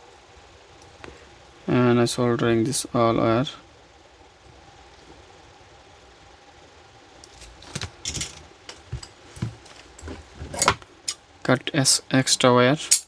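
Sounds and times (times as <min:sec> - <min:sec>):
faint steady hum: 0:00.0 - 0:13.0
tools and wires clicking: 0:07.2 - 0:11.2.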